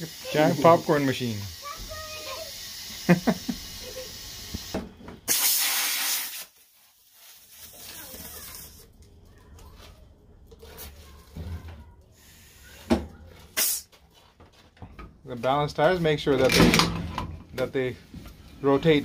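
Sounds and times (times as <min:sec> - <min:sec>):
compressed air hissing: 0:00.0 - 0:08.1, 0:12.2 - 0:12.9, 0:13.5 - 0:13.9
quiet work sounds: 0:06.6 - 0:19.0.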